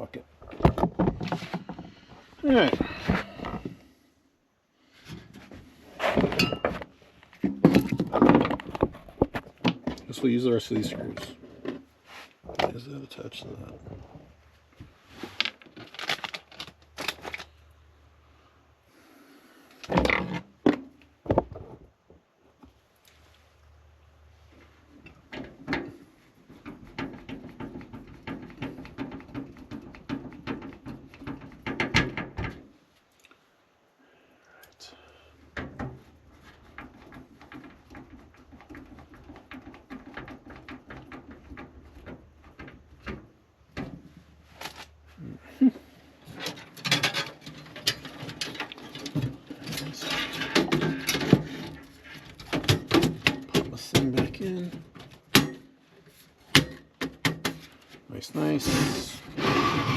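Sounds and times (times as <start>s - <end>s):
clicks and rattles of computer parts: 6.0s - 10.1s, 15.4s - 17.6s, 46.2s - 55.8s, 56.4s - 58.6s
small parts clicking and rattling: 15.4s - 17.6s.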